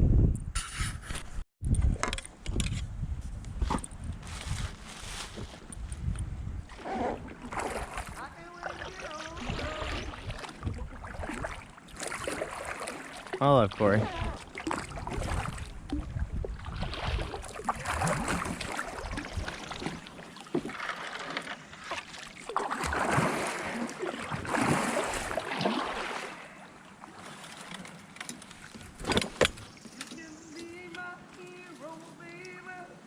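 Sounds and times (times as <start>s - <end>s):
paddle splashing in water: 6.7s - 31.8s.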